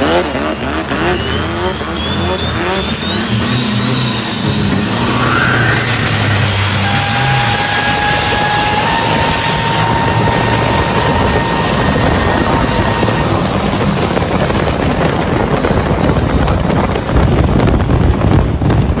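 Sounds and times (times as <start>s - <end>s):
falling whine: 0.0s - 18.4s
high whine: 0.0s - 19.0s
vehicle noise: 0.0s - 19.0s.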